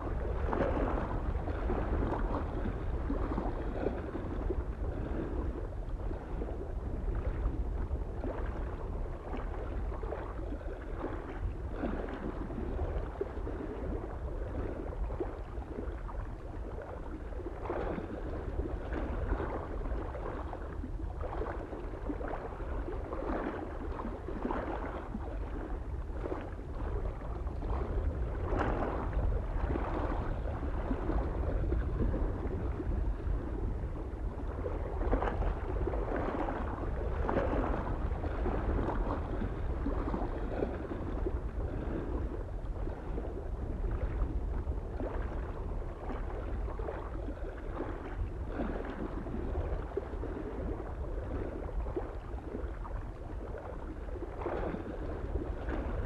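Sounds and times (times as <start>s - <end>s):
low wind rumble: 0.0s - 56.0s
small waves lapping on shore: 0.0s - 56.0s.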